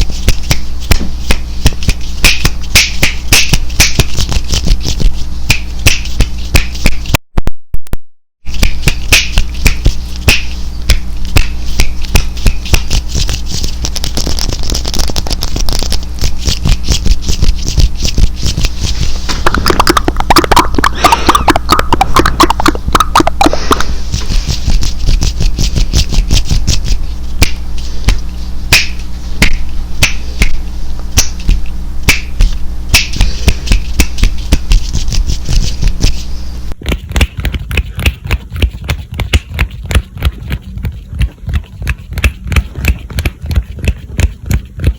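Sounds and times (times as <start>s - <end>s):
steady low hum: 0.0s - 7.2s, 8.5s - 44.9s
mouth sounds: 19.0s - 27.6s.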